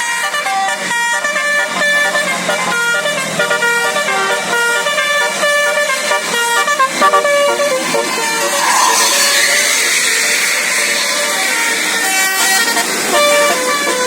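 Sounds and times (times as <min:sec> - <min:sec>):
musical bus horn melody: 0:00.0 - 0:14.0.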